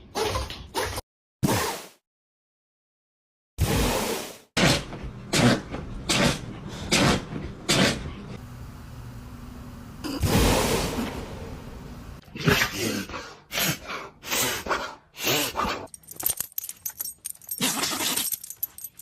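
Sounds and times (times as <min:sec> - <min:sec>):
dogs sneezing: 0:04.6 - 0:08.1.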